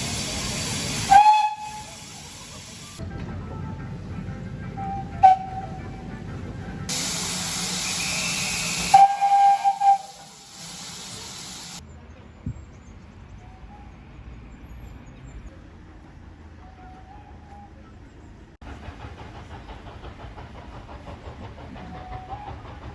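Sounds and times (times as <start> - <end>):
steam locomotive hissing: 0.0 - 3.0, 4.0 - 11.8, 18.6 - 22.9
steam whistle blast: 1.0 - 2.1, 4.8 - 5.8, 7.0 - 10.3.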